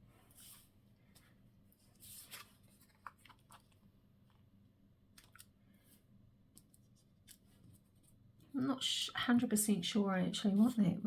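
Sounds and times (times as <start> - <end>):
paper rustle: 0.3 - 3.9.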